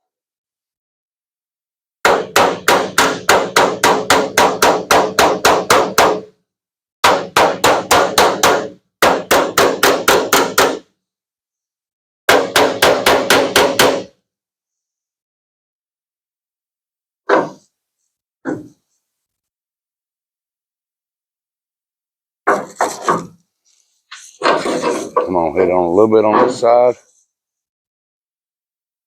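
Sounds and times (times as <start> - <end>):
hammer tapping on sheet metal: 2.0 - 6.3, 7.0 - 10.9, 12.3 - 14.1.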